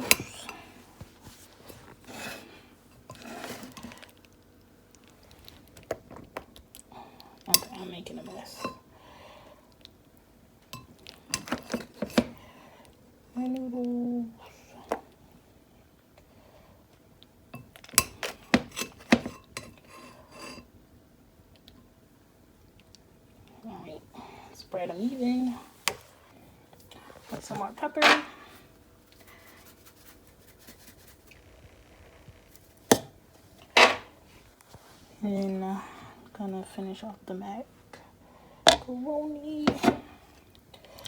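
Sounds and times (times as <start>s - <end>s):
utensil scraping in dish: 1.3s - 4.1s, 18.7s - 20.7s.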